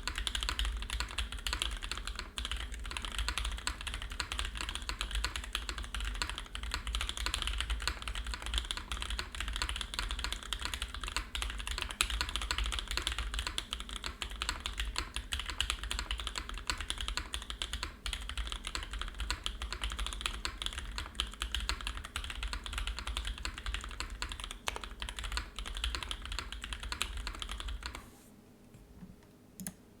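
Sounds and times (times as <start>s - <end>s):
typing on mechanical keyboard: 0.0s - 28.0s.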